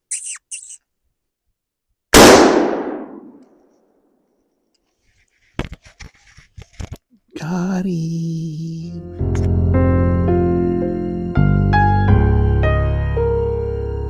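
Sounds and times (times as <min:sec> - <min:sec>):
gunshot: 0:02.2 - 0:03.4.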